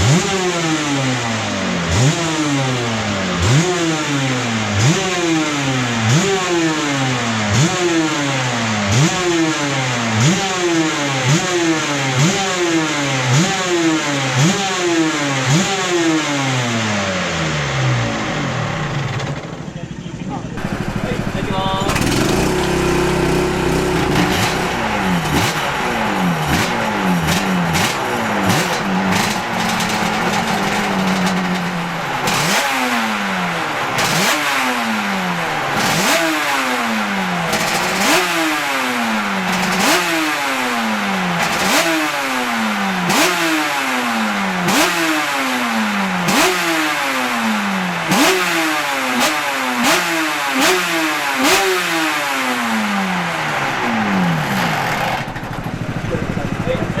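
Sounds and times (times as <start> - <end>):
motorcycle engine revving: 0.0 - 57.0
exhaust cracks: 18.0 - 42.2, 52.6 - 57.0.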